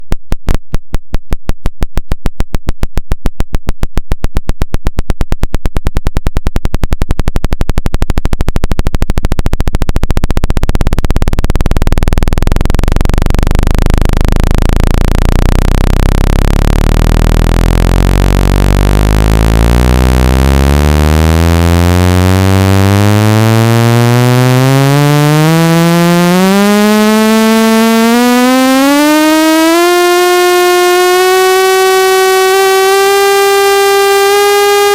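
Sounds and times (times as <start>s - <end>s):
rapid clicking pulses: 1.0s - 34.9s
synthetic tone rising in pitch: 7.4s - 34.9s.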